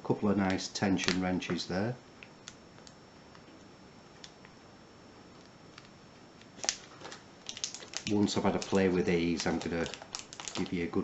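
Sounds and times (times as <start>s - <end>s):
handling noises of tools in package: 6.6s - 11.0s.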